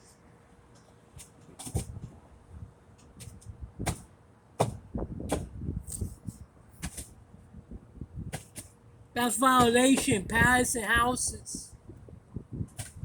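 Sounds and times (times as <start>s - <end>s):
sharp knocks and thuds: 3.8s - 5.5s
dull thumps: 4.6s - 5.5s.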